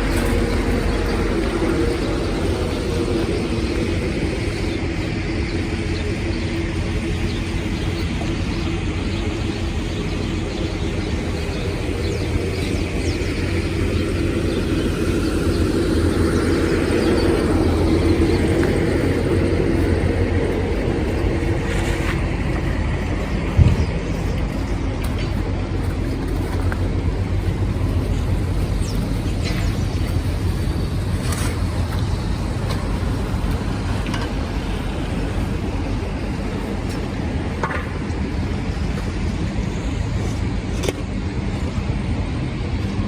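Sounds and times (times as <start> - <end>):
city street traffic rumble: 0.0 - 43.0.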